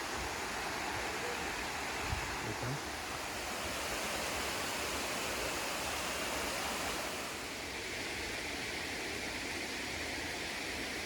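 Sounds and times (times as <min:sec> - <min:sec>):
waterfall rushing: 0:00.0 - 0:08.2.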